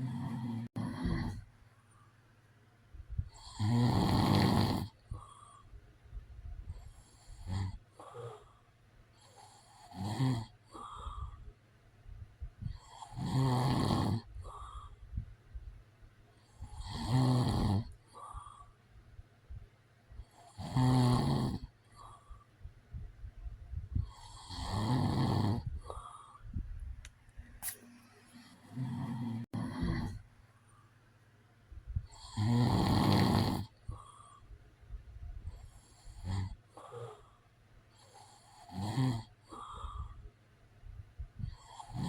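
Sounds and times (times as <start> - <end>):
man snoring: 0.0 - 1.4, 3.3 - 5.4, 7.1 - 8.5, 9.2 - 11.4, 12.8 - 14.8, 16.6 - 18.6, 20.4 - 21.8, 24.0 - 26.1, 28.5 - 30.2, 32.1 - 34.4, 36.0 - 37.3, 38.0 - 40.2, 41.5 - 42.0
soft breathing: 0.0 - 3.6, 5.0 - 9.8, 10.6 - 13.2, 14.3 - 16.8, 18.0 - 20.5, 21.8 - 24.5, 25.6 - 31.1, 33.7 - 38.5, 39.4 - 42.0.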